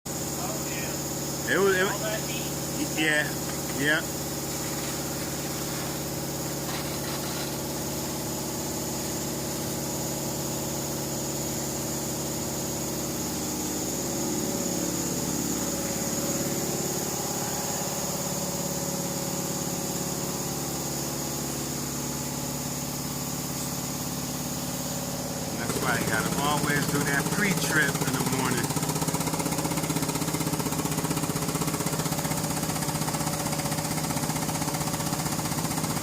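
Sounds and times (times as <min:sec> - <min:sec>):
truck diesel engine idling: 0:24.2 - 0:35.9.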